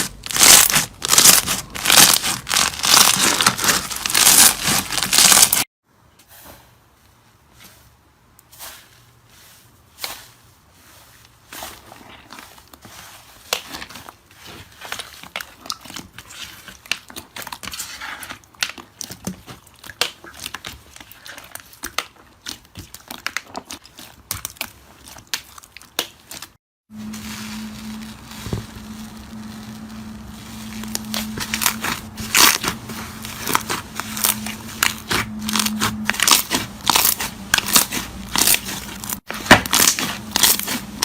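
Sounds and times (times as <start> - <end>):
slime crackling and popping: 0.0 - 5.7, 27.3 - 41.0.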